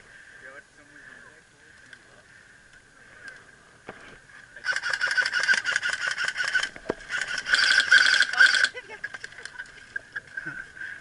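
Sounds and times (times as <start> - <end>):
airsoft gun firing rapidly: 4.7 - 8.7.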